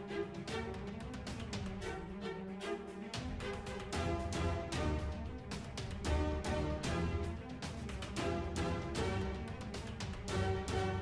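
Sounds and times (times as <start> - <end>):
background music with drums and bass: 3.2 - 11.0.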